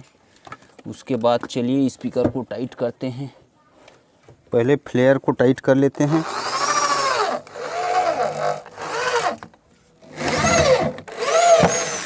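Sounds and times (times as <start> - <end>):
power drill whine: 6.1 - 12.0.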